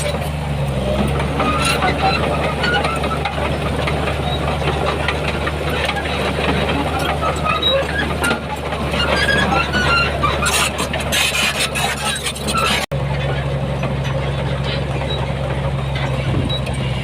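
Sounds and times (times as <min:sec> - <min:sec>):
diesel engine running steadily: 0:00.0 - 0:17.0
sharp metal clanks and rattles: 0:01.0 - 0:17.0.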